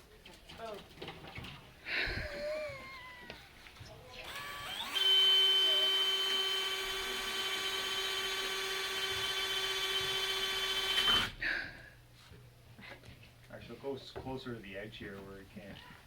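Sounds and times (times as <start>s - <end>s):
electric drill whining: 4.2s - 11.4s.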